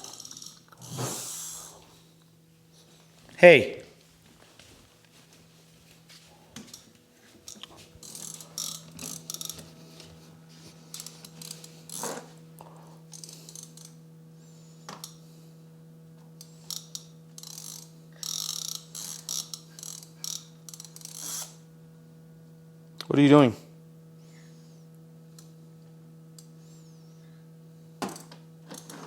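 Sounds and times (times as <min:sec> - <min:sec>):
small mechanism clicking and rattling: 0:00.0 - 0:00.9, 0:07.5 - 0:09.6, 0:10.9 - 0:12.2, 0:13.1 - 0:14.0, 0:16.4 - 0:21.6
electrical hum: 0:00.0 - 0:29.0.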